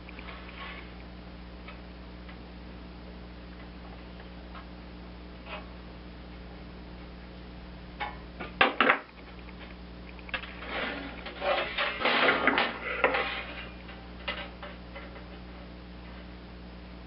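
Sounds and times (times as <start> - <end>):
steady low hum: 0.0 - 17.0
metal tools rattling and scraping: 10.3 - 15.3.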